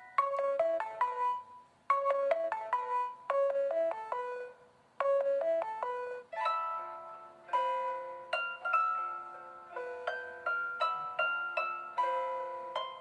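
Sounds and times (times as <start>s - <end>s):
phone ringtone melody: 0.0s - 13.0s.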